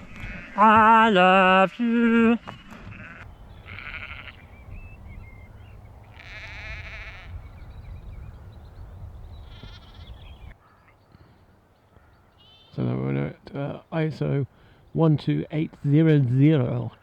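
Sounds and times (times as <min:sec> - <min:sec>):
sheep bleating: 0:00.0 - 0:04.5, 0:06.1 - 0:07.4, 0:09.4 - 0:10.2
faint bird chirps: 0:07.3 - 0:12.9.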